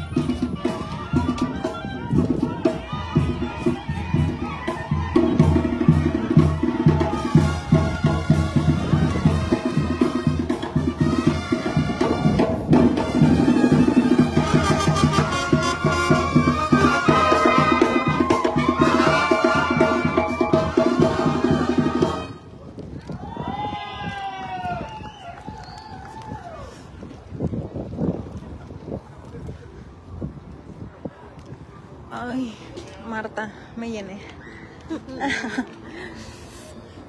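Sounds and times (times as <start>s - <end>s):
brass band melody: 0.0s - 22.5s
drum and bass beat: 0.1s - 22.3s.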